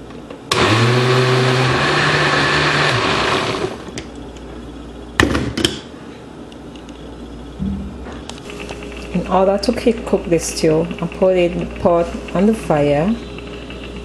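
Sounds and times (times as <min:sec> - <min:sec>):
blender running: 0:00.5 - 0:03.9
sharp knocks: 0:07.6 - 0:08.3.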